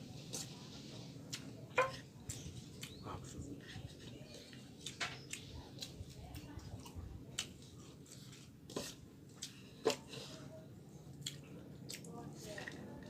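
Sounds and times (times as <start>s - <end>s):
person chewing with wet smacks: 1.2s - 1.6s, 2.2s - 10.1s, 11.0s - 12.3s.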